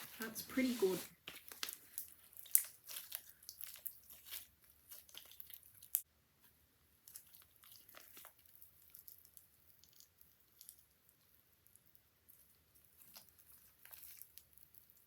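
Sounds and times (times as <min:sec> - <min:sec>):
slime squeezed and stretched by hand: 0:01.3 - 0:06.0, 0:07.0 - 0:10.9, 0:12.2 - 0:15.0.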